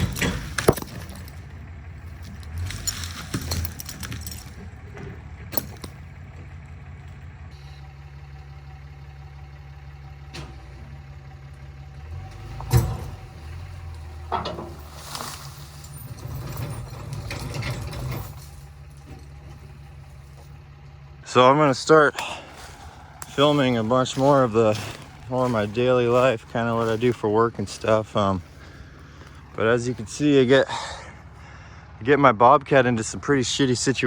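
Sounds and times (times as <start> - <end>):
sharp knocks and clunks: 0.0 - 1.6, 12.2 - 15.0
diesel engine running: 0.0 - 34.0.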